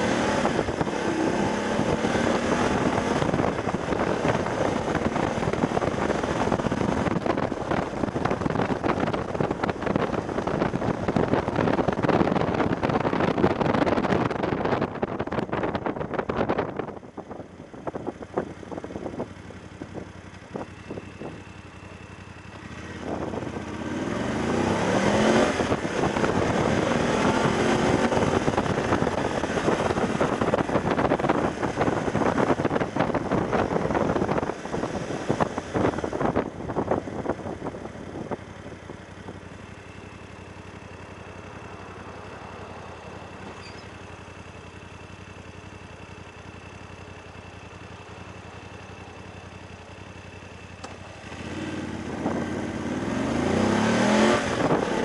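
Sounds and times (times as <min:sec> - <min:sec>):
wind noise on camera: 0:00.0 - 0:21.6, 0:22.8 - 0:39.5, 0:51.3 - 0:55.0
motorcycle engine accelerating: 0:00.0 - 0:55.0.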